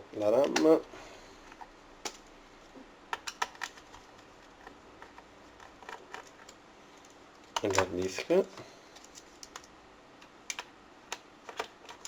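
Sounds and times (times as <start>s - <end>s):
small sharp clicks and taps: 9.0s - 12.0s.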